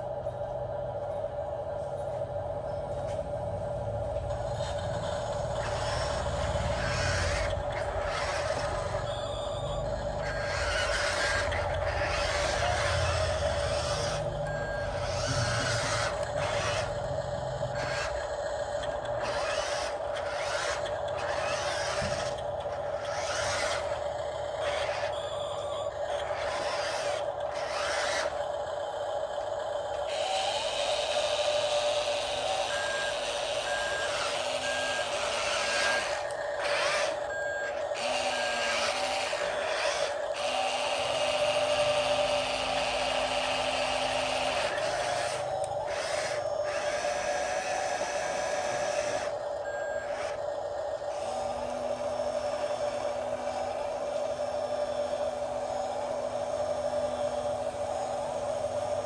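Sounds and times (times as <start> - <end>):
electric motor whine: 3.0 - 59.0
reversing alarm beeping: 8.3 - 18.2, 19.2 - 28.5, 31.3 - 50.5.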